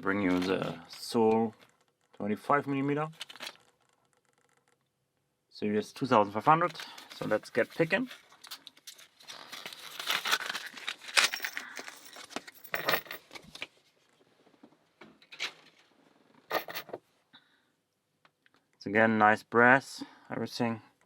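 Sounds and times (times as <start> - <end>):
rustling: 6.6 - 14.6.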